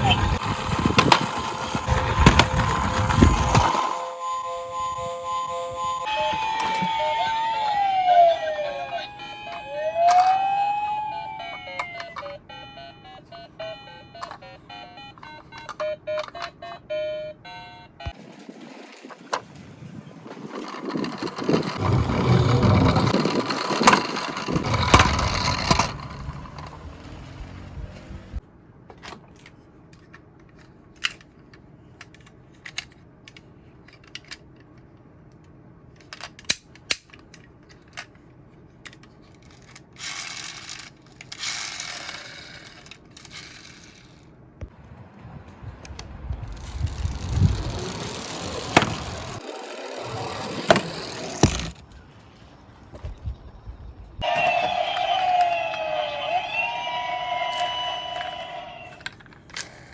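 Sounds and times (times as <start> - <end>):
small cars clicking and knocking: 0.0 - 4.0, 9.2 - 10.7, 11.3 - 12.7, 14.1 - 14.6, 15.2 - 17.2, 18.0 - 44.3, 45.8 - 52.1, 58.9 - 59.9
toy cars rolling with rattling rumble: 0.0 - 4.0, 18.2 - 28.1, 35.9 - 44.3, 45.9 - 52.0, 58.9 - 59.9.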